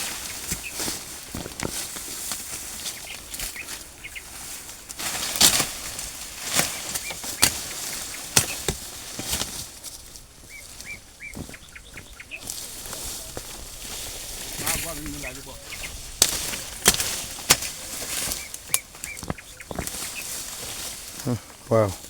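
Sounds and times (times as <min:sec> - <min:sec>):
digging strikes: 0:16.2 - 0:20.0.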